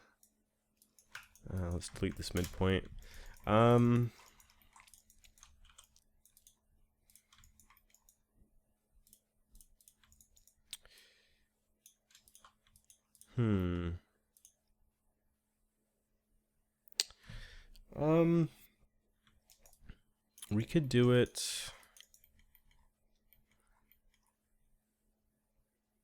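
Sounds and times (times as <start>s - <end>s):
mouse and keyboard clicks: 0.2s - 8.2s, 9.0s - 10.8s, 11.9s - 13.3s
person humming hmm: 13.3s - 14.1s.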